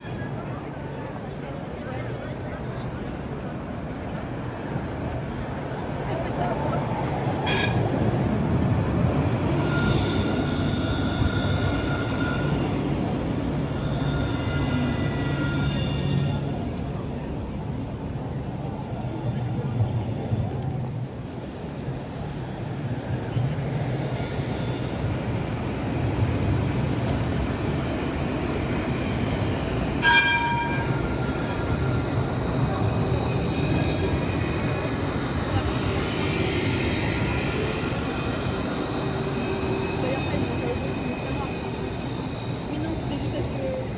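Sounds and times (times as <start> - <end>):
tram rumbling by: 0.0 - 43.9
high wheel squeal: 9.2 - 18.1.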